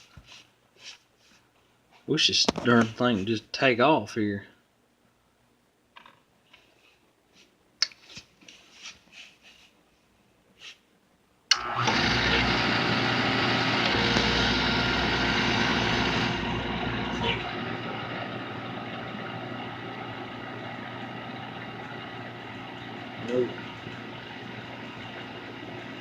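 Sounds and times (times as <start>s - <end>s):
furnace burner motor whirring: 11.5s - 26.0s.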